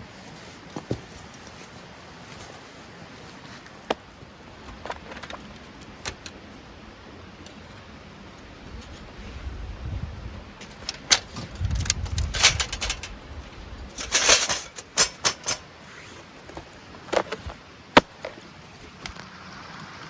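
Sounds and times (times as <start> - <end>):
sharp clicks and knocks: 10.6 - 13.1, 13.9 - 15.6
rustling of handled objects: 10.6 - 19.0.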